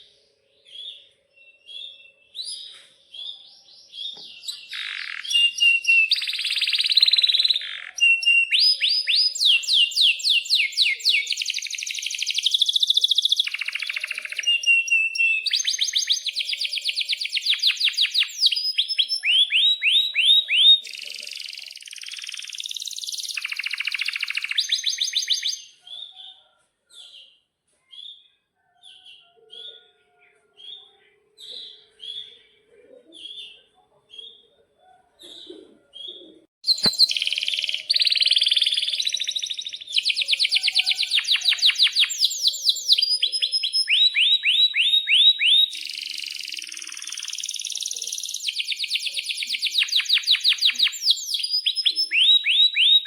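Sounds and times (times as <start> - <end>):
canary singing: 0.0 - 27.4, 36.1 - 53.0
short chirps: 36.6 - 39.4
sharp click: 36.7 - 37.3.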